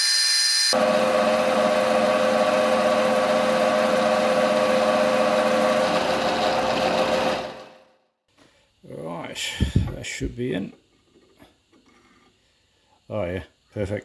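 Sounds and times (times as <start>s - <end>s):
electric motor humming: 0.6s - 7.8s.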